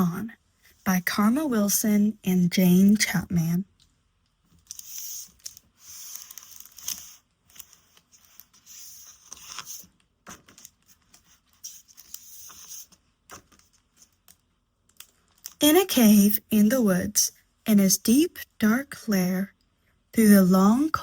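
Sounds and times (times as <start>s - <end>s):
book pages turning: 4.4s - 15.6s.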